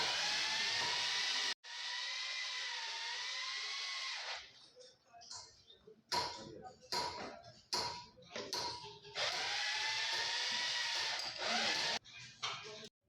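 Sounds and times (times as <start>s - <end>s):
power tool running: 0.0s - 4.4s, 9.2s - 12.0s.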